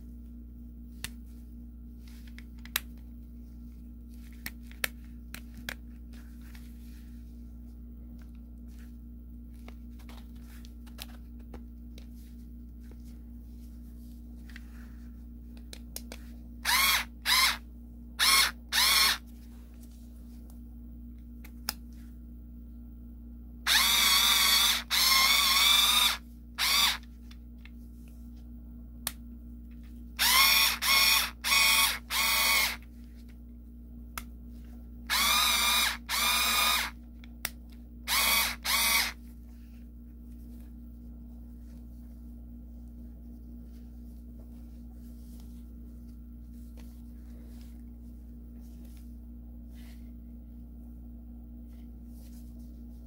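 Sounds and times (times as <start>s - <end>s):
steady low hum: 0.0s - 53.0s
screwdriver motor whirring: 16.6s - 17.6s, 18.2s - 19.2s, 23.7s - 27.1s, 30.2s - 32.8s, 35.1s - 37.0s, 38.1s - 39.2s.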